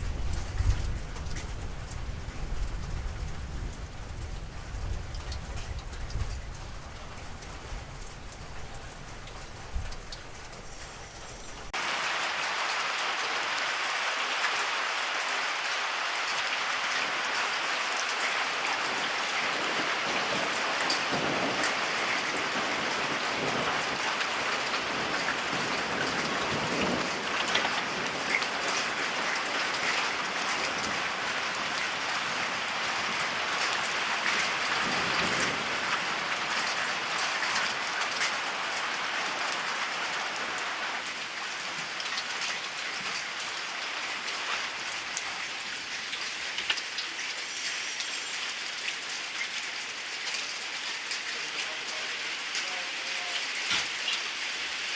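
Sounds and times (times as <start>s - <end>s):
distant thunder rumbles: 0.0s - 11.7s, 18.8s - 29.2s
steady rain falling: 0.0s - 54.9s.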